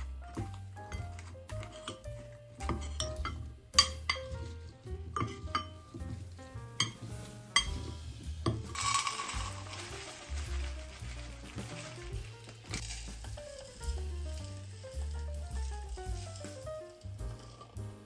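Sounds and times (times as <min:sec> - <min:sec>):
soft background music: 0:00.0 - 0:18.0
utensils clinking against dishes: 0:00.9 - 0:04.5, 0:05.2 - 0:06.0, 0:06.8 - 0:10.4.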